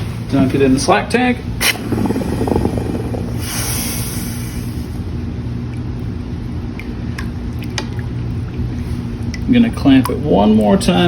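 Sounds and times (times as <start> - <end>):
water bubbling: 1.6 - 3.8
hot steel hissing in water: 1.6 - 5.0
low rumble: 1.7 - 5.0.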